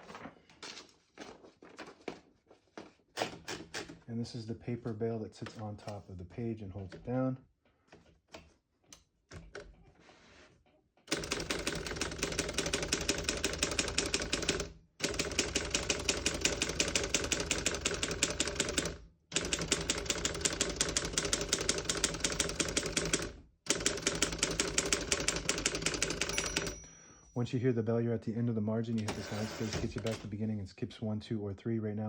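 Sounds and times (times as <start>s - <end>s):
typewriter margin bell: 11.1s - 27.4s, 29.0s - 30.2s.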